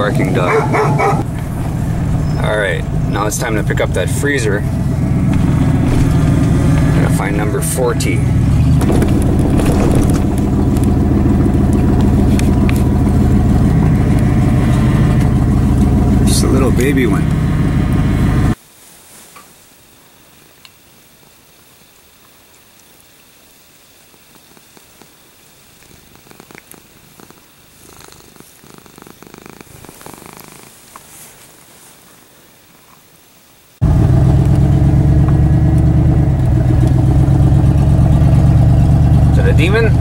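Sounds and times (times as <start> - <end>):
vehicle engine running: 0.0 - 18.6, 33.8 - 40.0
cat purring: 24.4 - 31.3.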